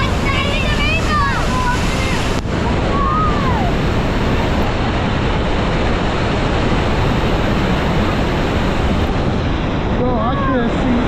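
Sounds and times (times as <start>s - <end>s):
waterfall pouring: 0.0s - 4.6s
wind buffeting microphone: 0.0s - 11.0s.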